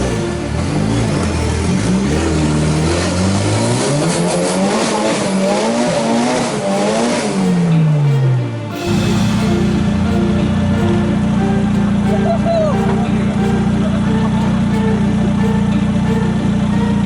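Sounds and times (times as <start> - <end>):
off-road vehicle engine revving: 0.0 - 7.3.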